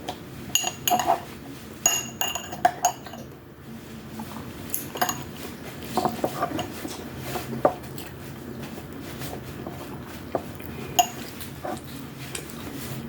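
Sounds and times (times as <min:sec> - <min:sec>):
cutlery clinking against plates: 0:00.5 - 0:03.3, 0:04.7 - 0:05.4, 0:10.4 - 0:12.5.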